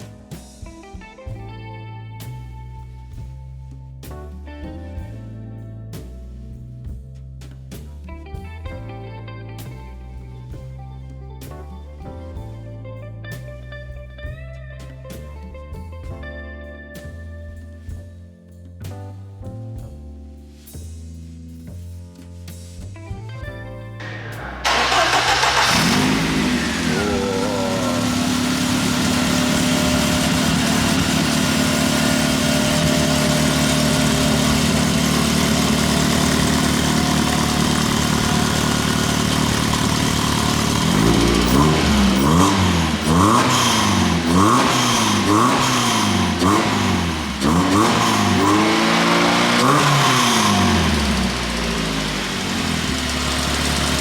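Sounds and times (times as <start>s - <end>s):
car engine idling and revving: 24.0s - 54.0s.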